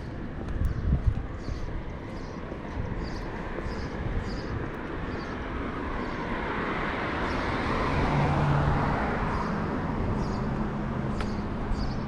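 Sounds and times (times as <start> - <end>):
footsteps on pavement: 0.0 - 7.8, 8.6 - 12.0
car approaching: 4.4 - 12.0.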